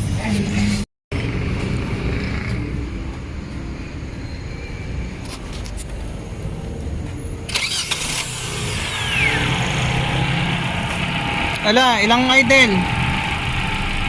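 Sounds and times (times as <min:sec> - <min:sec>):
car engine running: 0:07.5 - 0:14.0
car starter cranking: 0:07.5 - 0:14.0.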